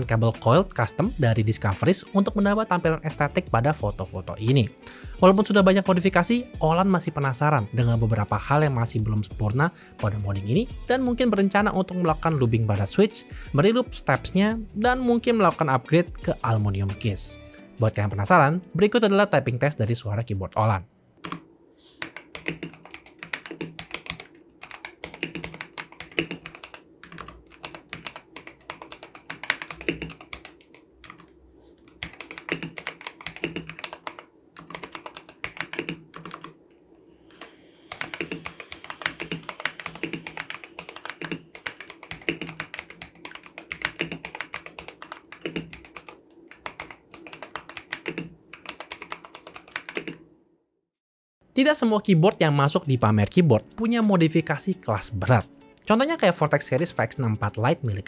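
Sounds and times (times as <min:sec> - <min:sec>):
fast mechanical keyboard typing: 0:22.0 - 0:36.6, 0:37.3 - 0:50.2.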